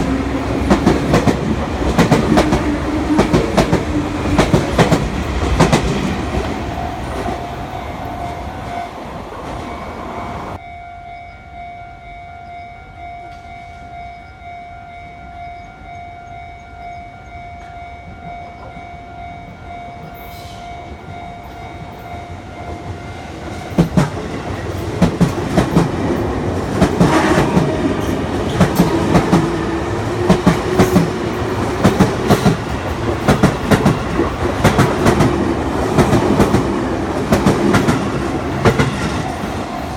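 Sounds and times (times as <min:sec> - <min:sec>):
train clattering over rails: 0:00.0 - 0:10.6, 0:20.0 - 0:39.9
level-crossing warning bell: 0:00.0 - 0:39.9.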